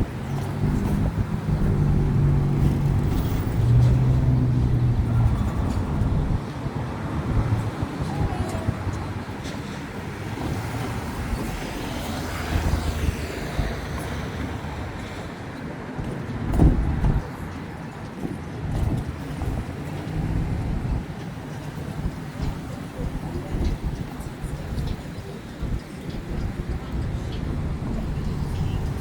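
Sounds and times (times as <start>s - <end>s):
passing vehicles rumbling: 0.0s - 29.0s.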